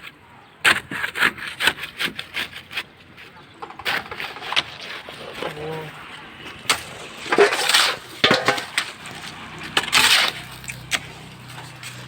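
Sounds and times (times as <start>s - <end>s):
hand tools scraping and clinking: 1.8s - 12.0s.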